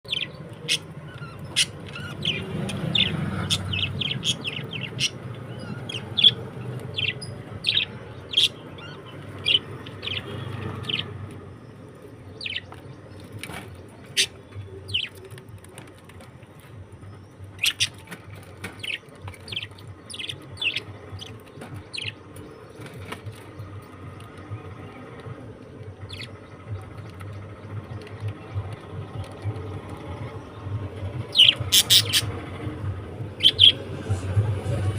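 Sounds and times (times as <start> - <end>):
budgerigars chirping: 0.1 - 11.2, 12.3 - 15.3, 17.6 - 23.4, 26.0 - 26.9, 31.3 - 32.4, 33.4 - 33.8.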